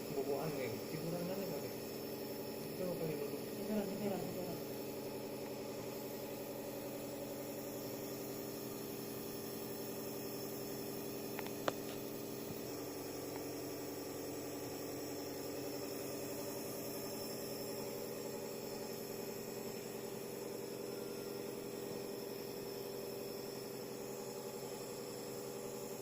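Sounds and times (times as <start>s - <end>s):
nebulizer compressor humming: 0.0s - 26.0s.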